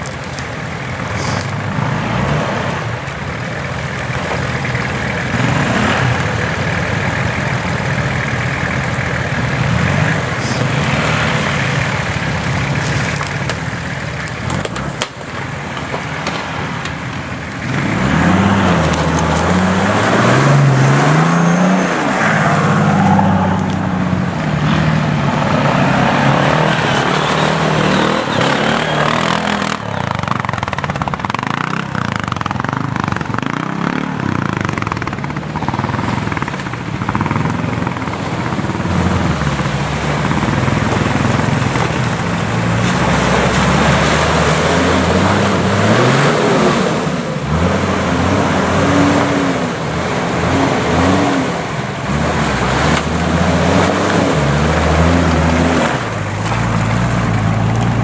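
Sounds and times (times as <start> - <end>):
off-road vehicle engine revving: 0.0 - 58.0
constant rushing noise: 21.4 - 58.0.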